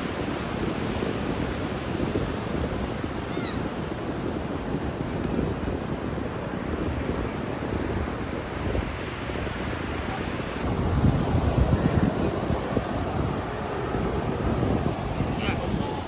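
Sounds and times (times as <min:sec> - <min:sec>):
wind buffeting microphone: 0:08.2 - 0:16.0
ocean surf: 0:10.6 - 0:16.0.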